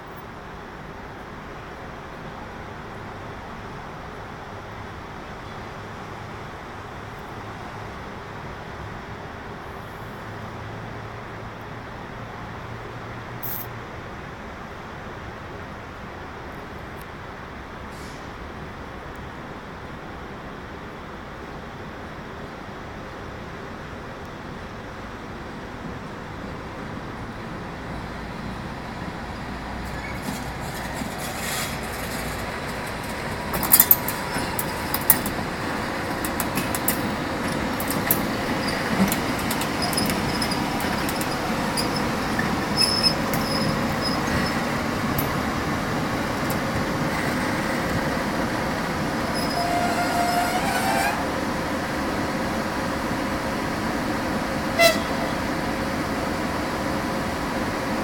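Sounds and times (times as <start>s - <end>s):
locomotive hum and rumble: 0.0s - 58.0s
short metal squeal: 29.9s - 32.3s, 37.5s - 44.7s, 49.3s - 51.3s
metallic clanks and knocks: 30.2s - 45.4s.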